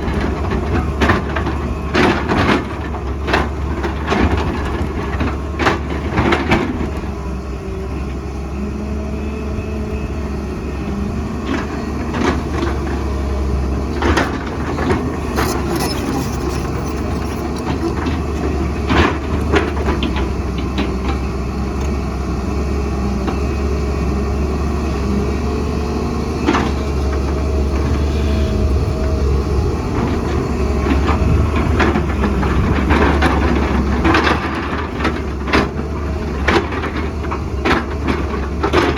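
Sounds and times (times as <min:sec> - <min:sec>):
excavator diesel engine running: 0:00.0 - 0:38.9.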